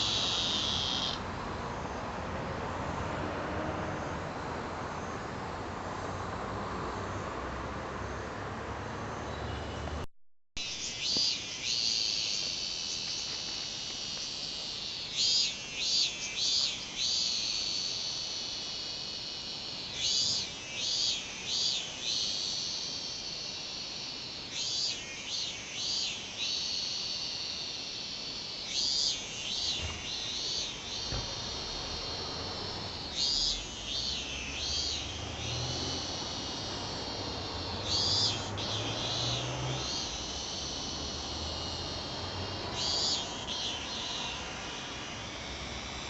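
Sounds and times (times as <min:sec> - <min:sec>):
cicada buzzing: 0:00.0 - 0:01.3, 0:10.6 - 0:46.0
pulsing cicada calls: 0:00.0 - 0:02.1, 0:10.6 - 0:46.0.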